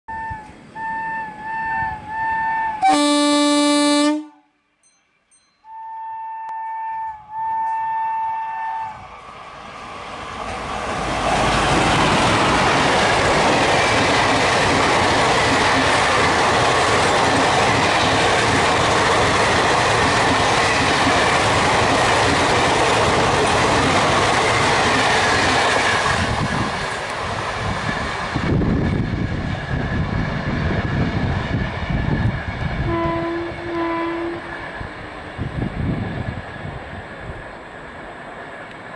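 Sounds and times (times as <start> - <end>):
train horn honks: 0.1 - 4.6, 5.6 - 9.0, 32.8 - 34.6
train wheels clattering on rails: 10.4 - 32.8.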